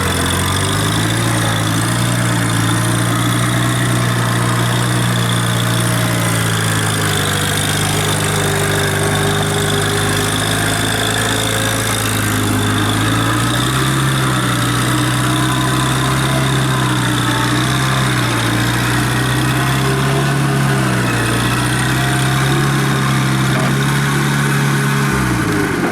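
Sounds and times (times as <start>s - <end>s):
skid steer engine idling: 0.0s - 25.9s.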